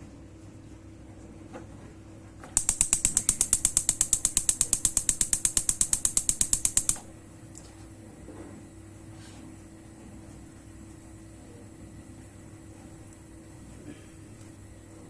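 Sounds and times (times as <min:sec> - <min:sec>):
stove spark igniter clicking: 0:02.6 - 0:07.1.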